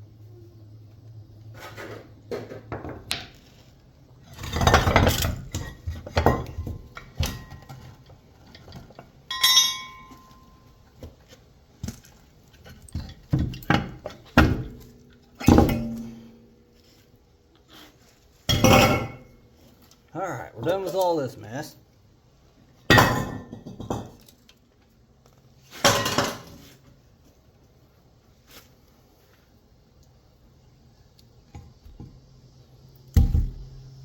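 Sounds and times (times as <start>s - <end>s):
metal pieces clanking: 9.3s - 10.6s
metal piece ringing: 9.3s - 10.7s.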